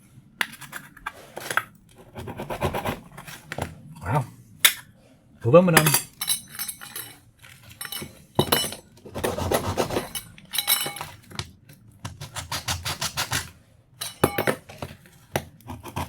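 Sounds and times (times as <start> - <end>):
scrap metal fittings clinking: 5.8 - 9.0, 10.0 - 11.3, 14.0 - 14.7.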